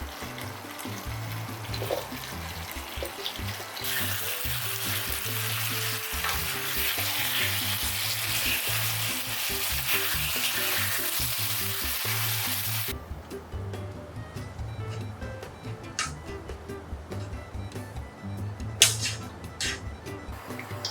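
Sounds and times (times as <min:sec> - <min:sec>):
food sizzling in a pan: 0:00.0 - 0:12.9, 0:20.4 - 0:20.9
soft background music: 0:00.0 - 0:20.9.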